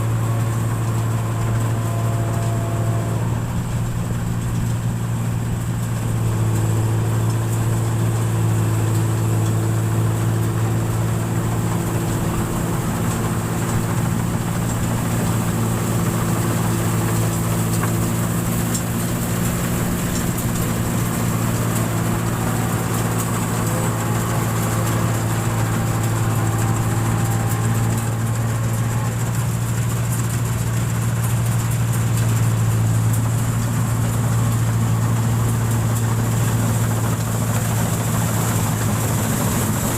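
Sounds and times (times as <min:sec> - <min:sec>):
machine engine droning: 0:00.0 - 0:39.9.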